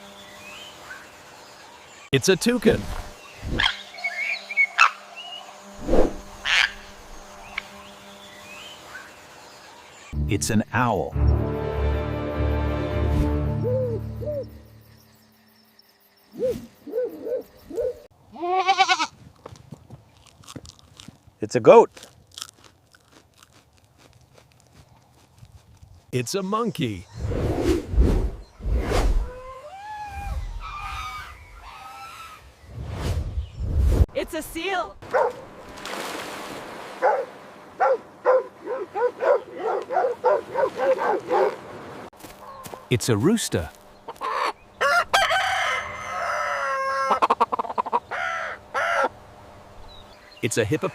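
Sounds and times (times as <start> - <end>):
owl hooting: 13.6 - 14.7, 16.3 - 18.1
seal barking: 37.0 - 41.7.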